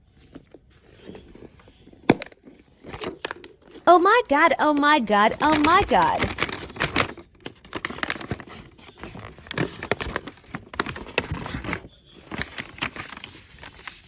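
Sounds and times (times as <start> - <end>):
packaging crinkling and tearing: 2.3 - 3.9, 5.3 - 14.0.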